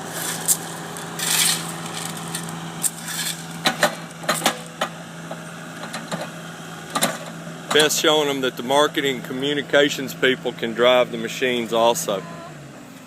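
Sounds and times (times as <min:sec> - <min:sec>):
backhoe engine running: 0:00.0 - 0:13.0
sharp metal clanks and knocks: 0:01.2 - 0:05.0.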